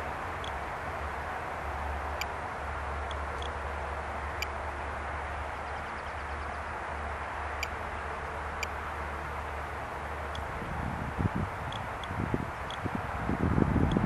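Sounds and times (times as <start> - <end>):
high-pitched ticks: 11.7 - 12.8.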